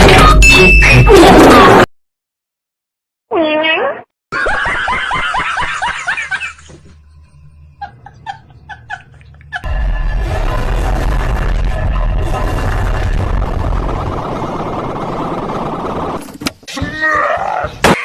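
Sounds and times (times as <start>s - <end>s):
laughter in bursts: 4.3s - 6.7s, 7.8s - 9.7s
loud noisy sound: 9.7s - 16.2s.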